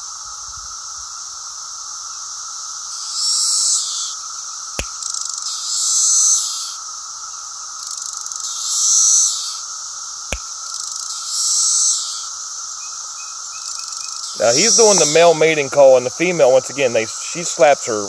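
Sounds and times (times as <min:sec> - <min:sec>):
cicada buzzing call: 0:00.0 - 0:18.0
cicadas droning: 0:00.0 - 0:18.0
finger snap: 0:04.8 - 0:05.1, 0:10.3 - 0:10.6.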